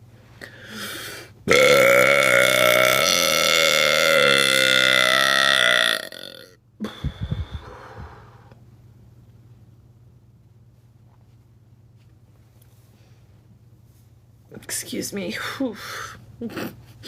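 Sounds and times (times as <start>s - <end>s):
woman belching: 1.5s - 6.6s
low thumps: 7.0s - 8.1s.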